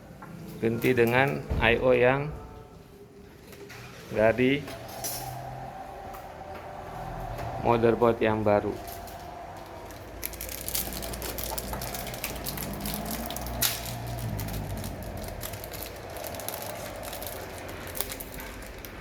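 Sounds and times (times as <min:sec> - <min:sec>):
small metal clicks and crackles: 0:08.8 - 0:19.0.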